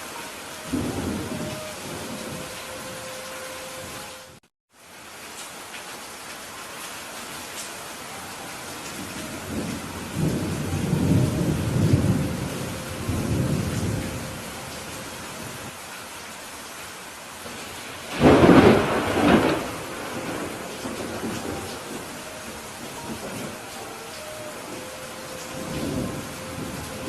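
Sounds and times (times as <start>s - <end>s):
rain on a roof: 0.0s - 27.0s
thunder rumbling: 0.6s - 3.1s, 8.9s - 15.7s, 17.4s - 27.0s
sharp thunderclap: 18.1s - 22.0s.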